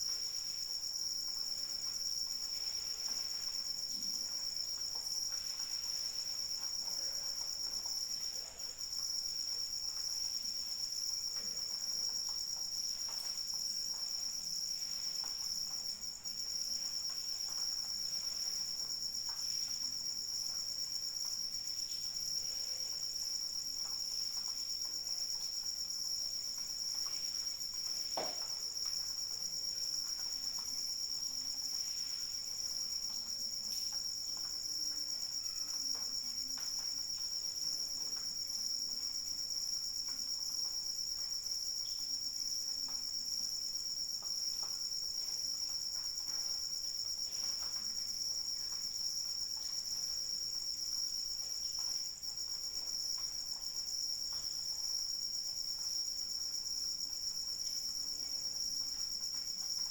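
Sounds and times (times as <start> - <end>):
crickets trilling: 0.0 - 59.9
light rain with drips: 0.0 - 59.9
loud tap: 28.2 - 28.4.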